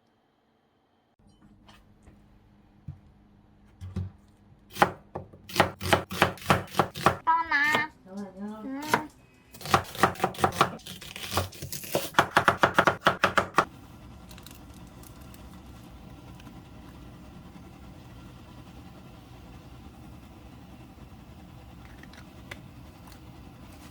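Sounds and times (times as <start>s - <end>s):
knife chopping on cutting board: 3.8s - 7.8s, 8.8s - 13.7s.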